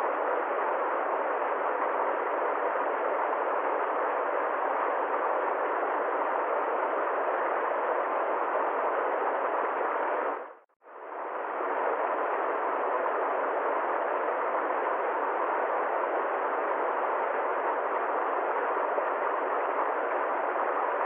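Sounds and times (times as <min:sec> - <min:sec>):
steady rushing noise: 0:00.0 - 0:21.0.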